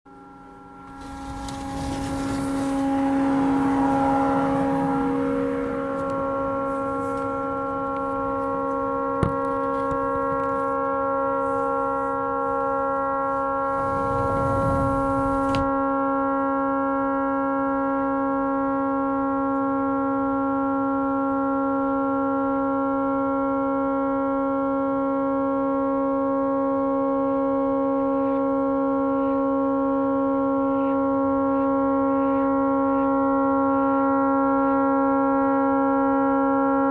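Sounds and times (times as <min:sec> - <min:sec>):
boat horn chord: 0:00.1 - 0:36.9
rushing hiss: 0:00.9 - 0:04.6.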